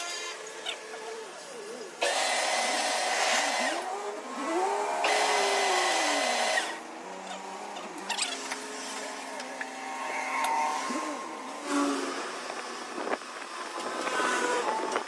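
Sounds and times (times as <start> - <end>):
power tool whirring bursts: 2.0 - 9.0.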